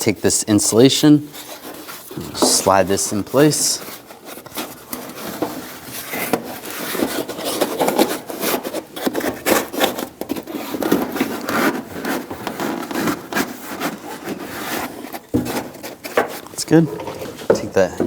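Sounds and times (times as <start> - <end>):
pad rubbing and scraping: 1.4 - 8.8.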